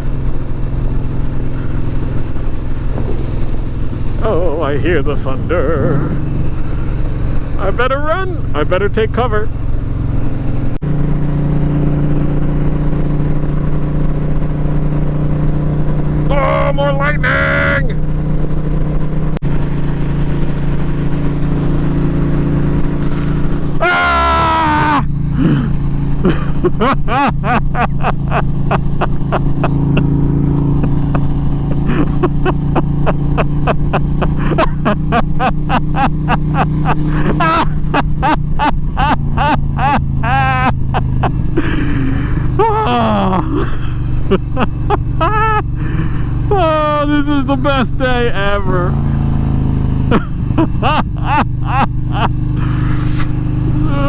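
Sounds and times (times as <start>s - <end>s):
motorcycle engine cruising: 0.0s - 54.0s
wet road noise: 0.0s - 54.0s
wind rushing: 1.6s - 7.6s
rider's voice: 4.2s - 6.4s, 7.5s - 9.6s, 16.3s - 18.0s, 31.8s - 32.5s, 34.0s - 35.2s, 36.4s - 38.0s, 39.5s - 40.8s, 42.5s - 44.5s, 45.9s - 49.3s, 52.6s - 54.0s.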